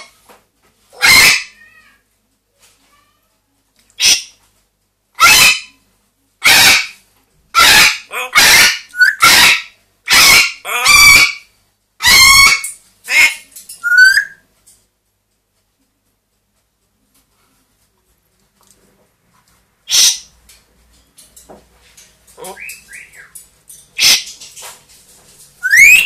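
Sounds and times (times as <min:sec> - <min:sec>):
parrot squawking harshly: 0:00.9 - 0:01.7, 0:04.0 - 0:04.3, 0:05.2 - 0:05.7, 0:06.4 - 0:14.4, 0:19.9 - 0:20.3, 0:22.4 - 0:23.3, 0:24.0 - 0:24.4, 0:25.6 - 0:26.0.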